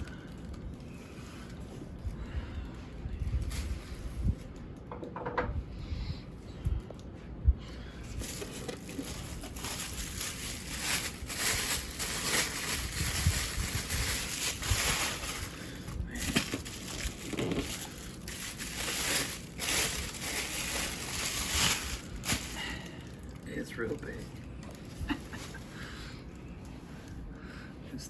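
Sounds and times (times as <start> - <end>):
packing material crinkling: 8.1 - 25.7.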